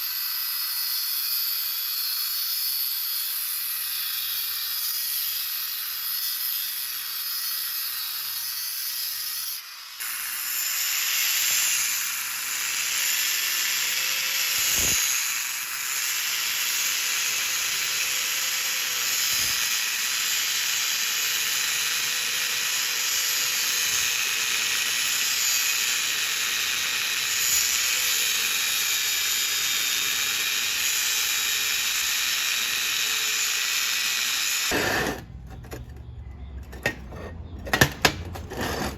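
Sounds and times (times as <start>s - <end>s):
welding arc crackling and hissing: 10.0s - 35.1s.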